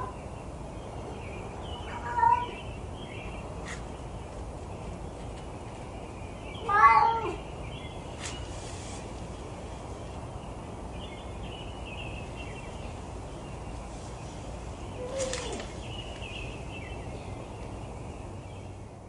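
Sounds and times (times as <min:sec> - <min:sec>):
small birds chirping: 0:00.0 - 0:19.0
steady background hiss: 0:00.0 - 0:19.0
cat meowing: 0:01.9 - 0:02.6, 0:06.6 - 0:07.4.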